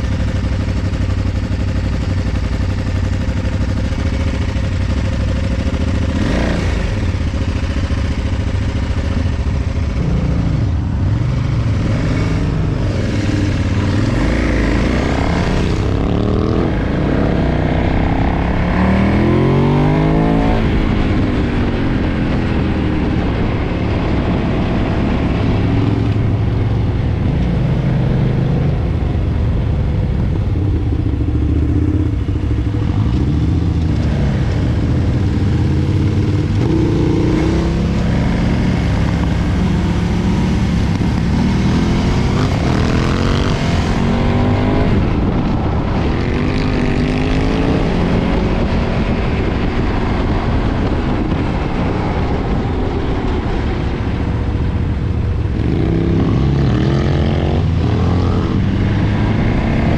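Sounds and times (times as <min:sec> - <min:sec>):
motorcycle engine idling and revving: 0:00.0 - 0:59.9
motorcycle accelerating away: 0:11.2 - 0:23.2, 0:31.2 - 0:54.4, 0:55.4 - 0:59.9.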